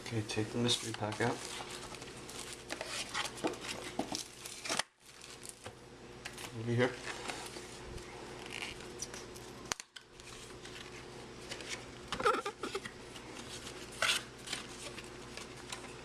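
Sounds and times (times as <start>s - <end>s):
card pack rustling and crinkling: 0.5s - 5.7s, 10.2s - 16.0s.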